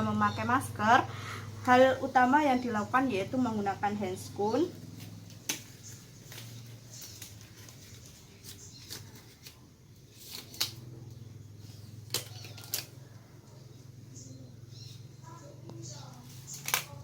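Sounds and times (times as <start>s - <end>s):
gloves rustling: 4.4s - 13.4s.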